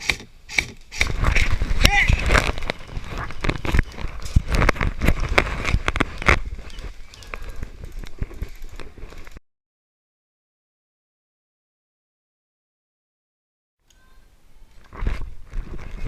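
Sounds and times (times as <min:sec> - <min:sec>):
rustling: 0:00.5 - 0:09.4.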